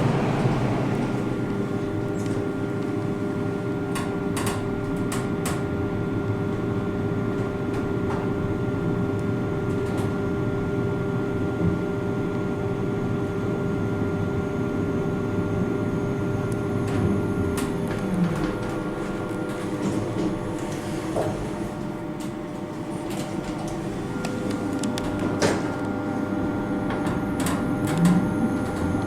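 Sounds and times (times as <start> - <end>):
lift car humming: 0.0 - 3.9, 16.8 - 29.0.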